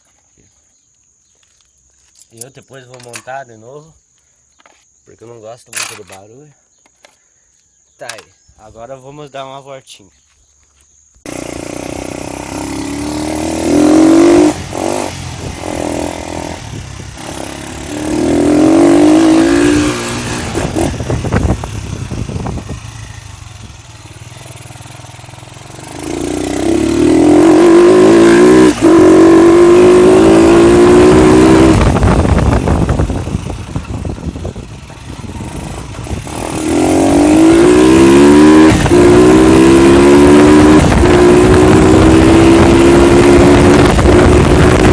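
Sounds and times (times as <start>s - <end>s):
motorcycle engine accelerating: 11.2s - 44.9s.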